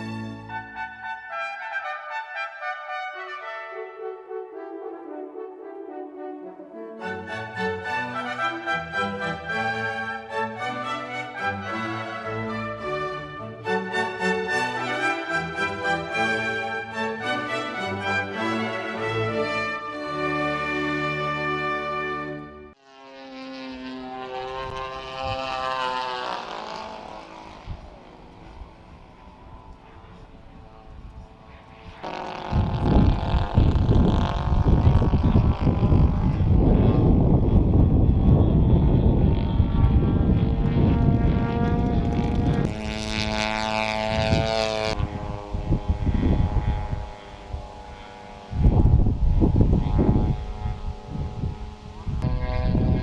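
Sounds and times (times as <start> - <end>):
model airplane engine droning: 0.0 - 53.0
wind buffeting microphone: 24.5 - 43.3, 43.9 - 53.0.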